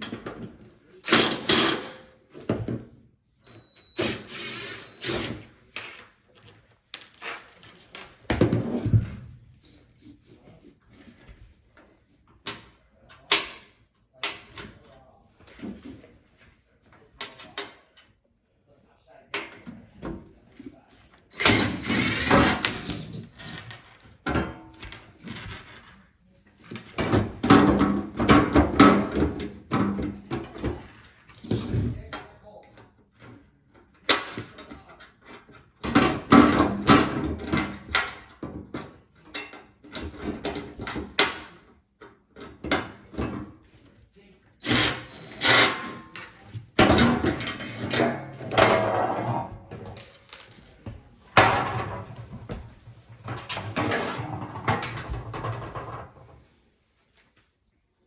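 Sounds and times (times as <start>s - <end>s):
plastic and metal parts rattling: 49.9s - 51.5s.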